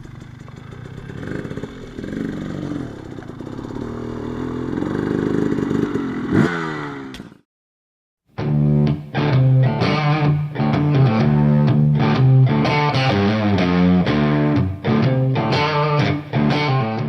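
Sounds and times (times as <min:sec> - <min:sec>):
dirt bike engine revving: 0:00.0 - 0:07.4.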